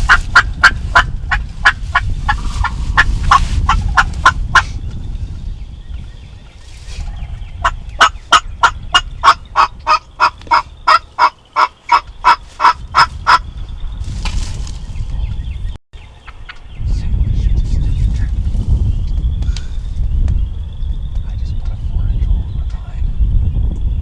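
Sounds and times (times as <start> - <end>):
low rumble: 0.0 - 10.9, 12.8 - 24.0
turkey yelps: 7.6 - 13.4
short rustle: 14.1 - 15.0.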